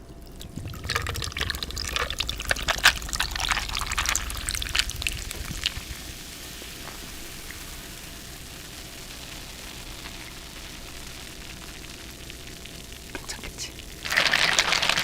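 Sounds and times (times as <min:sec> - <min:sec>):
drink pouring and splashing: 0:00.1 - 0:07.6, 0:14.0 - 0:15.0
ice crackling and clinking: 0:00.2 - 0:05.8, 0:14.0 - 0:15.0.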